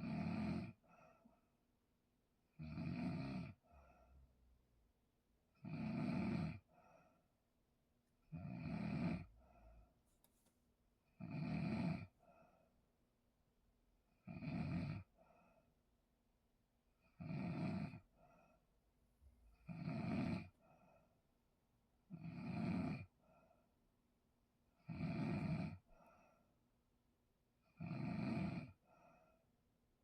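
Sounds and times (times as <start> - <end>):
person snoring loudly: 0.0 - 0.8, 2.6 - 3.6, 5.6 - 6.6, 8.3 - 9.3, 11.2 - 12.1, 14.3 - 15.1, 17.2 - 18.0, 19.6 - 20.5, 22.1 - 23.1, 24.8 - 25.8, 27.8 - 28.8
faint breath sound: 0.8 - 1.5, 3.6 - 4.4, 6.7 - 7.4, 15.2 - 15.8, 18.1 - 18.7, 25.9 - 26.6, 28.8 - 29.6.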